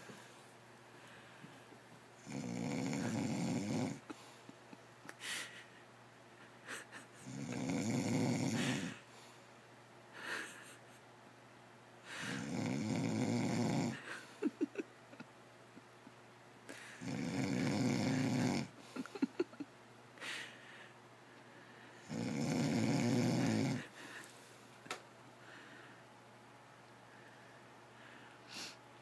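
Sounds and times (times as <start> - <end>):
loud snoring: 2.2 - 4.1, 7.2 - 9.0, 12.2 - 14.1, 16.9 - 18.8, 22.0 - 23.9.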